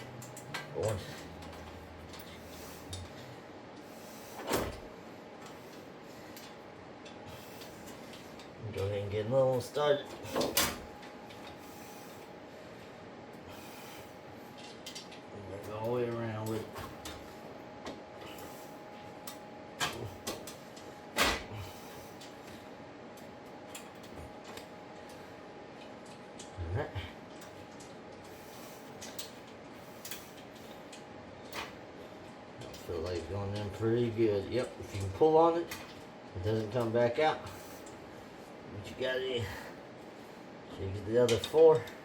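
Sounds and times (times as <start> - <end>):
steady low hum: 0.0 - 42.0.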